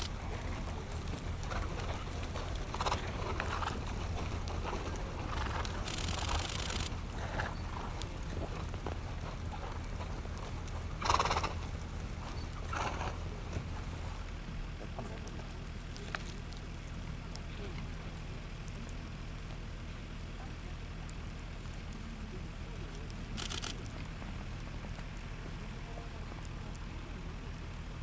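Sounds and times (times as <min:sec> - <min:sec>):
horses calling: 0:00.0 - 0:14.4
steady low rumble: 0:00.0 - 0:14.7.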